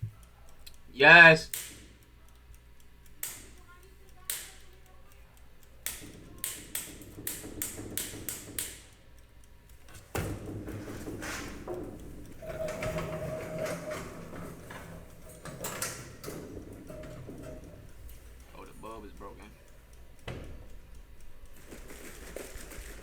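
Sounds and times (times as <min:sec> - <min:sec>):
sharp clicks and taps: 0:01.5 - 0:23.0
mechanical clatter: 0:09.7 - 0:19.6
steady machine whine: 0:11.7 - 0:19.4.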